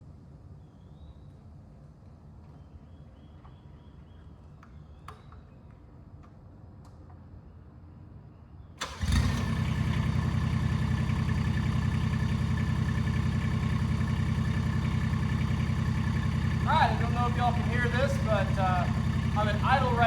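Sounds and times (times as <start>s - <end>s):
excavator engine starting and idling: 8.8s - 20.0s.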